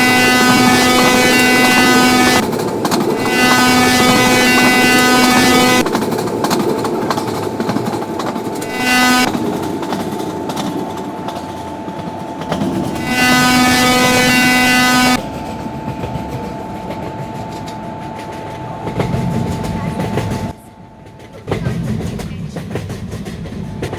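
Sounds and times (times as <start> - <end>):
locomotive horn blasts: 0.0 - 6.1, 8.4 - 20.6
train wheels clicking over rail joints: 0.0 - 23.9.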